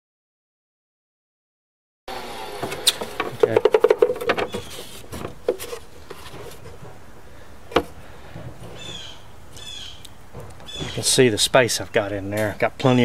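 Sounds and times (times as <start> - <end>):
wooden drawer knocking: 2.6 - 7.0.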